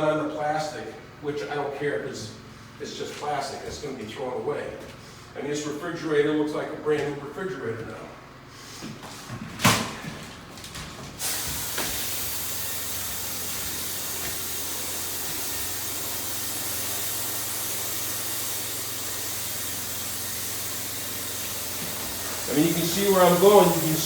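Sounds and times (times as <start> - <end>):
spray gun hissing: 11.2 - 24.0.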